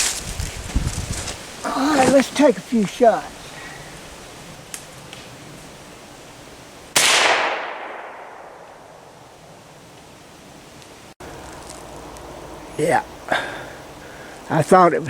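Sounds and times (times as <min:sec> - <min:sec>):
rifle shot: 0:07.0 - 0:09.0.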